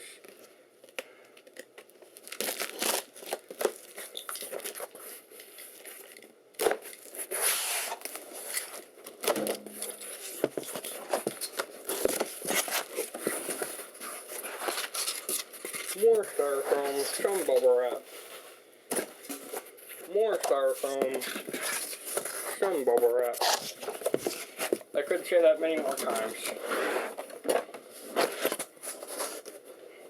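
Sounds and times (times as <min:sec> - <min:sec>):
packing materials crinkling and tearing: 0:00.9 - 0:18.0.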